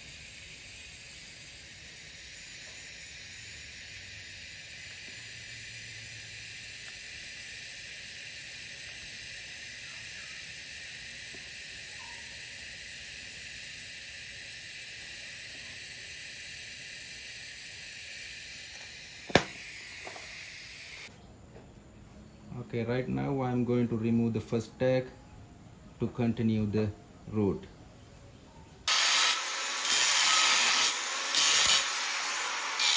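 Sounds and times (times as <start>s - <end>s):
welding arc hissing: 0.0s - 21.1s, 28.9s - 32.9s
sharp pop: 19.3s - 20.2s.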